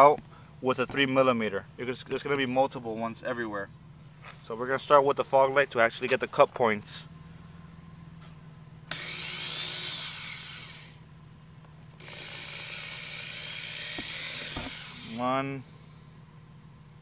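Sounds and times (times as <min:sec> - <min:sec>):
power drill boring through plastic: 0:08.9 - 0:11.0, 0:12.0 - 0:15.2.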